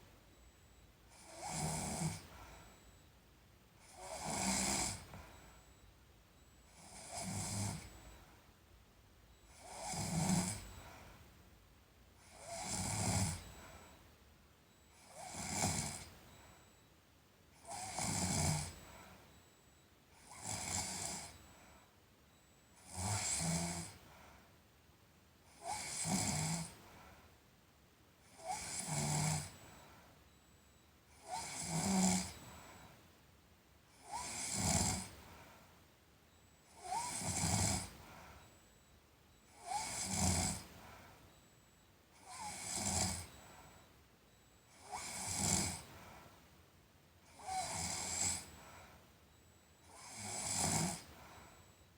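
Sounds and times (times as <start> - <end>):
person snoring: 3.9 - 5.0, 34.2 - 35.1, 50.0 - 51.0.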